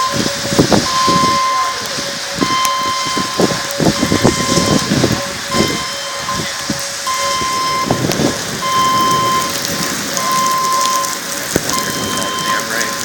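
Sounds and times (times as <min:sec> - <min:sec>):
rain falling: 0:00.0 - 0:13.0
electronic tone beeping: 0:02.4 - 0:04.9, 0:05.5 - 0:06.5, 0:07.1 - 0:08.0, 0:08.6 - 0:09.6, 0:10.2 - 0:11.1, 0:11.7 - 0:13.0.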